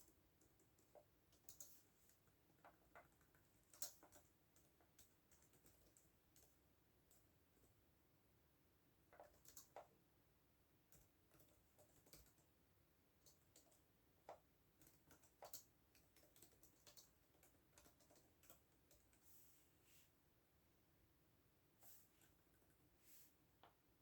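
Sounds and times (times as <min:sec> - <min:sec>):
computer keyboard typing: 0:00.0 - 0:07.7, 0:09.1 - 0:10.0, 0:10.9 - 0:12.6, 0:13.2 - 0:19.2.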